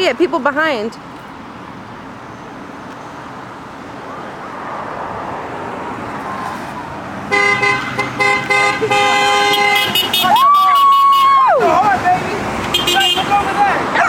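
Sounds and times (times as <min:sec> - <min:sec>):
passing traffic: 0:00.0 - 0:14.0
car horn honks: 0:07.3 - 0:11.4, 0:12.6 - 0:13.8.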